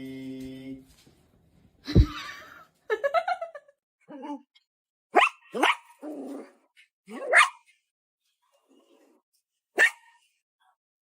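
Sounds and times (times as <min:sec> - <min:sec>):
dog barking: 0:05.1 - 0:05.9, 0:07.1 - 0:07.7, 0:09.8 - 0:10.2.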